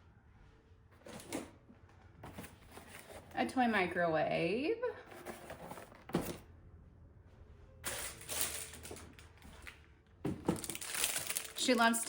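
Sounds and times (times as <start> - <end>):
rustling: 7.9 - 12.0.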